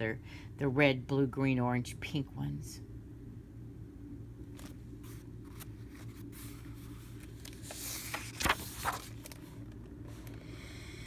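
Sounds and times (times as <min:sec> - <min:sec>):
low steady hum: 0:00.0 - 0:11.0
paper page rustling: 0:04.5 - 0:10.4.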